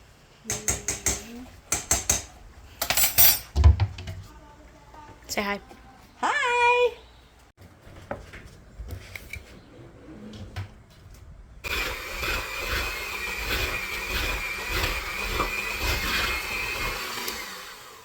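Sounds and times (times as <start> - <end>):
electric hand mixer whining: 11.6 - 18.0.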